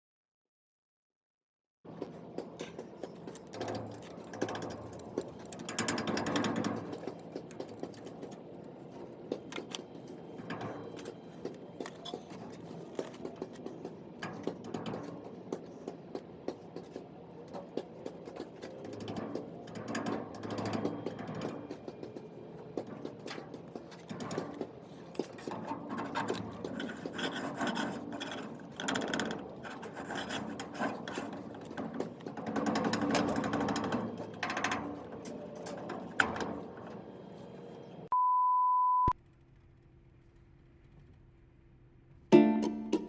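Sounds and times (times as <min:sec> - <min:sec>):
scraping and rubbing of tools: 0:23.0 - 0:37.7
electronic beep: 0:38.1 - 0:39.2.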